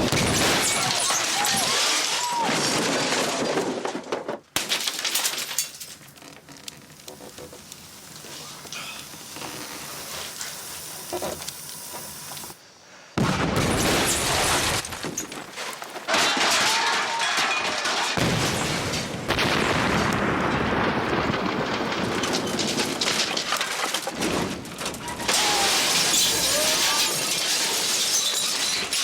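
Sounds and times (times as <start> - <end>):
roar of blast and debris: 16.2 - 28.0.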